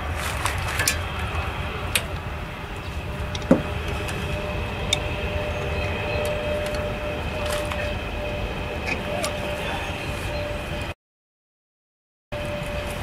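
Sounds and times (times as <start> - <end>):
faint steady whine: 0.0 - 11.0
low workshop rumble: 0.0 - 11.0.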